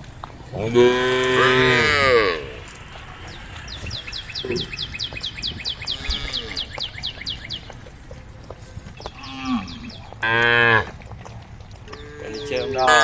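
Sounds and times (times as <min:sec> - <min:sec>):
cattle mooing: 0:00.5 - 0:02.7, 0:05.8 - 0:06.8, 0:09.1 - 0:11.0, 0:11.9 - 0:13.0
bird chirping fast: 0:03.2 - 0:10.3, 0:11.9 - 0:13.0.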